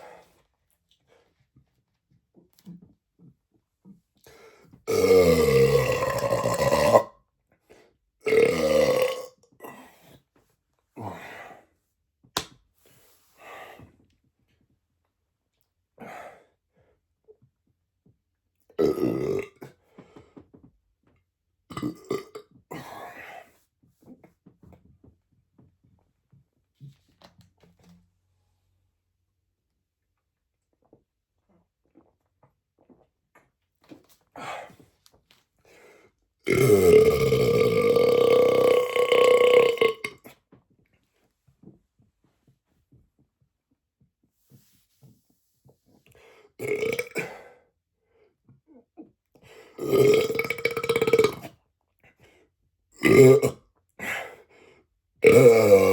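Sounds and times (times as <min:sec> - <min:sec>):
man belching: 0:04.9 - 0:07.1, 0:08.2 - 0:09.9, 0:18.8 - 0:19.7, 0:21.7 - 0:23.4, 0:36.5 - 0:40.3, 0:46.6 - 0:47.5, 0:49.8 - 0:51.5, 0:53.0 - 0:53.6, 0:55.2 - 0:55.9.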